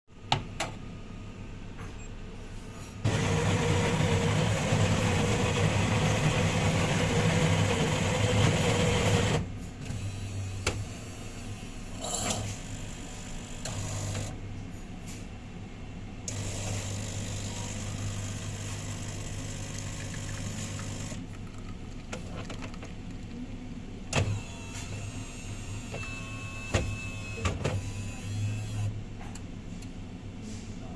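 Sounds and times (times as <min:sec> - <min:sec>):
coffee machine pump buzz: 0:03.0 - 0:14.4, 0:16.3 - 0:22.4, 0:24.2 - 0:28.9.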